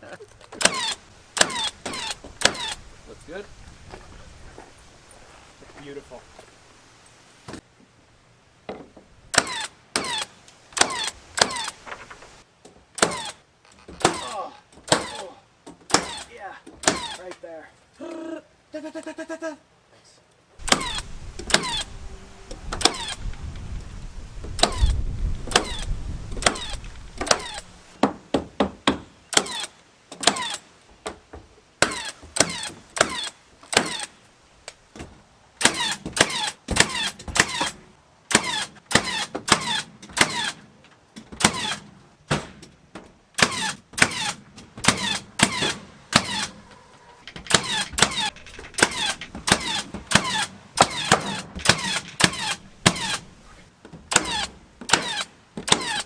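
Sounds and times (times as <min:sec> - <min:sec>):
sharp knocks of nailing boards: 0:14.0 - 0:17.2, 0:25.5 - 0:31.2, 0:41.2 - 0:46.5, 0:47.3 - 0:53.2.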